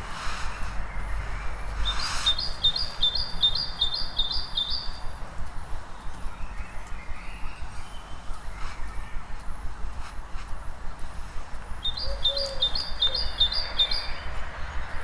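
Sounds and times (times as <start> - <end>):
low town rumble: 0.0 - 15.0
songbird singing: 0.0 - 15.0.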